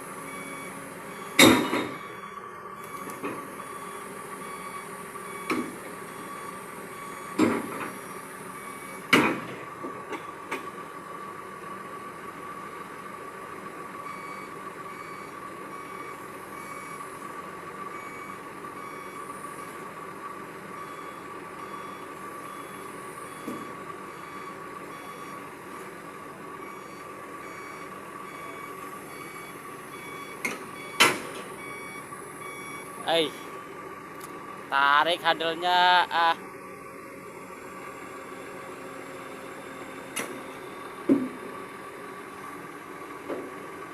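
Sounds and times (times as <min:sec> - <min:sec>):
on-off beeping: 0:26.6 - 0:33.5.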